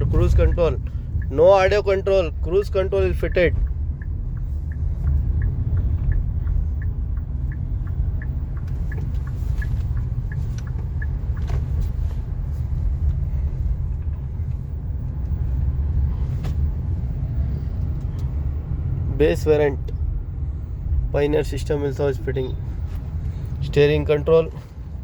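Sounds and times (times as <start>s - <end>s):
light regular ticking: 0.0s - 16.0s
car interior engine rumble: 0.0s - 25.0s.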